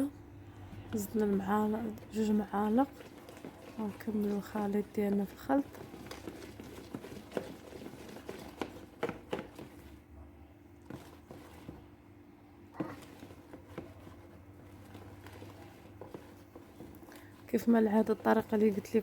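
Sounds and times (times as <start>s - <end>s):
utensil tapping mixing bowl: 0.6s - 10.0s, 10.8s - 11.9s, 12.8s - 19.0s.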